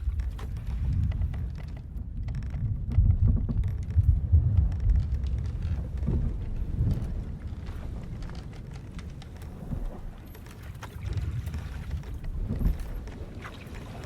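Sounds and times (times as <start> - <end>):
ship timbers creaking: 0.0 - 13.4
sea and wind around hull: 0.0 - 14.0.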